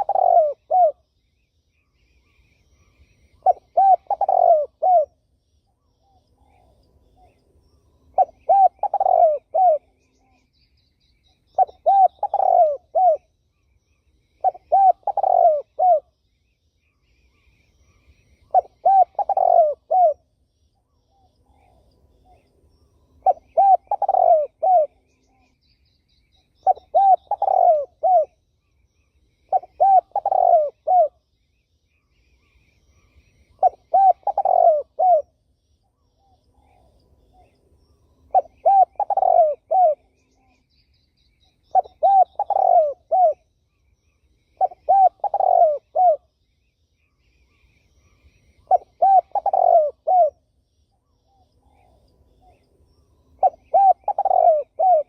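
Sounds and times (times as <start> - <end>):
dove cooing: 0.0 - 1.1, 3.4 - 5.2, 8.1 - 10.1, 11.5 - 13.3, 14.4 - 16.1, 18.4 - 20.2, 23.2 - 25.2, 26.6 - 28.4, 29.5 - 31.2, 33.0 - 35.4, 38.3 - 40.6, 41.7 - 43.5, 44.6 - 46.3, 48.1 - 50.4, 53.4 - 55.0.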